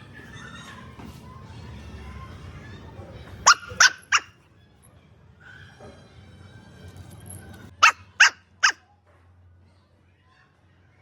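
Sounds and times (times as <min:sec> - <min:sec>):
dog barking: 0:03.4 - 0:04.3, 0:07.8 - 0:08.8.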